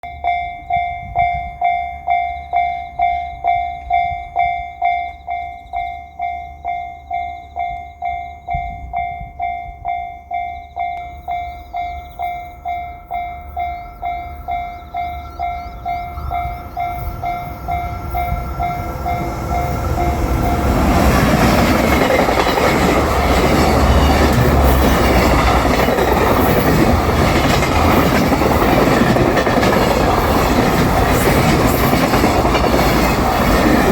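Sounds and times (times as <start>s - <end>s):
level crossing warning bell: 0.0s - 33.9s
train rumble and wheel clatter: 7.6s - 33.9s.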